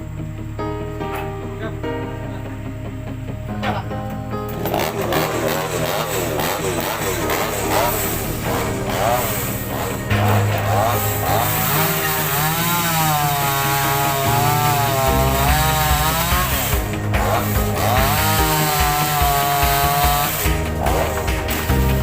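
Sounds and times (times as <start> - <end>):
background music: 0.0 - 22.0
chainsaw cutting wood: 4.5 - 22.0.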